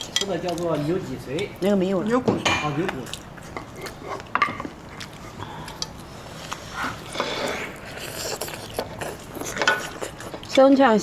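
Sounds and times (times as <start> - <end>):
chewing and sucking food: 3.0 - 11.0.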